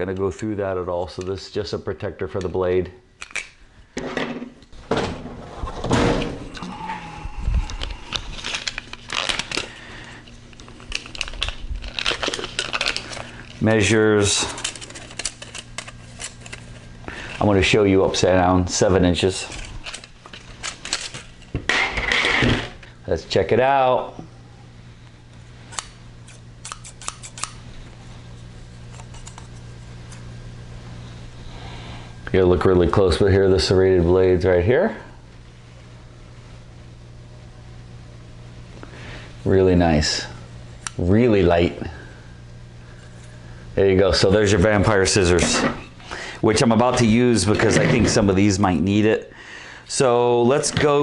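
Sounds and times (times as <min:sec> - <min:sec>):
plastic packaging crinkling: 0:07.6 - 0:18.2
shears blades clicking: 0:25.7 - 0:27.6.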